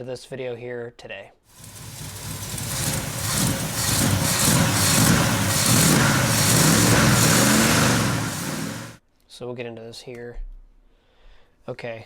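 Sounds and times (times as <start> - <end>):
road and wind noise: 1.6 - 9.0
vehicle engine running: 1.6 - 9.0.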